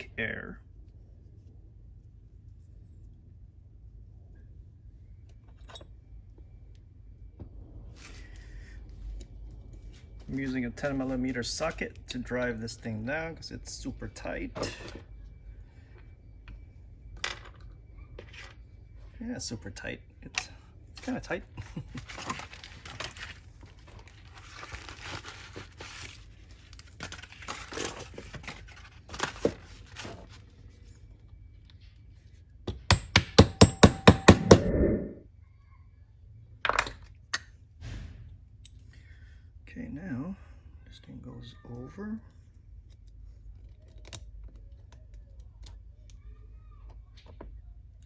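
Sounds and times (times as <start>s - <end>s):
low steady hum: 0.0s - 48.0s
metal parts scraping: 20.3s - 30.9s
impact wrench knocks: 32.7s - 34.7s.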